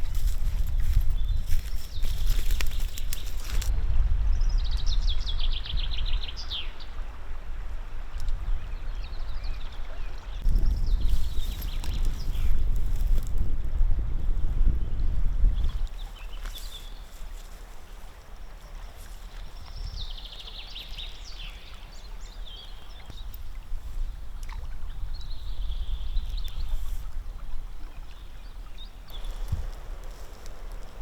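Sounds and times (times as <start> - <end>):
river flowing: 15.8 - 31.0.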